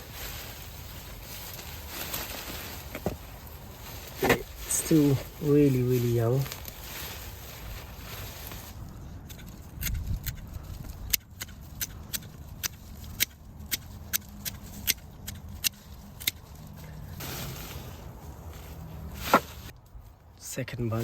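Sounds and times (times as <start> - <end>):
garden scissors snipping: 8.8 - 16.6.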